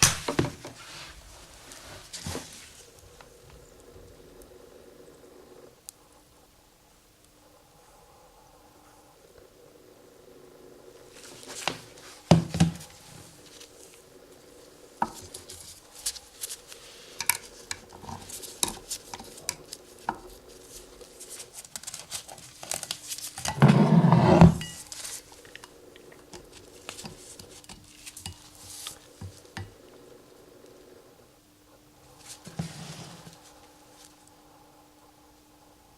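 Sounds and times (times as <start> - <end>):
faint steady hum: 0.0 - 35.9.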